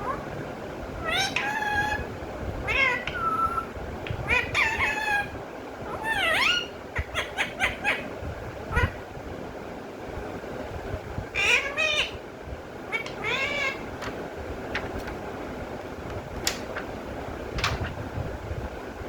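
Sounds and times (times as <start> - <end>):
parrot calling: 0.0 - 0.3, 1.0 - 9.0, 11.3 - 12.2, 12.8 - 14.0.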